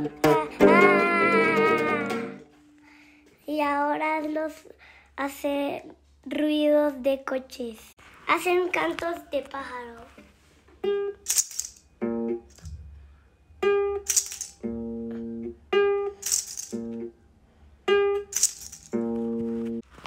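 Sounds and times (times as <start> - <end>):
rattle shake: 11.2 - 11.9, 12.5 - 12.8, 14.0 - 14.6, 16.2 - 17.0, 18.3 - 19.0.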